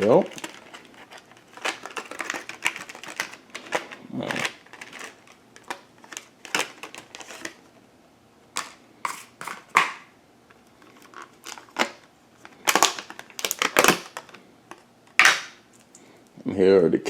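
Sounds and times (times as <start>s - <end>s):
plastic packaging crinkling: 0.0s - 7.6s, 10.8s - 14.4s.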